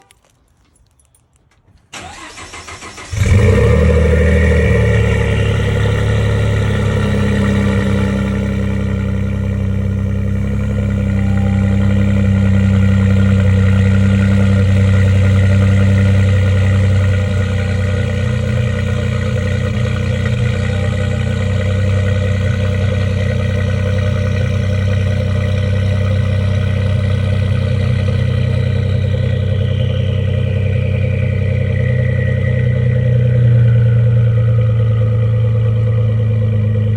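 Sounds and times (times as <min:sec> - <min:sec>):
engine idling: 0:01.9 - 0:36.9
starter cranking: 0:02.0 - 0:05.2.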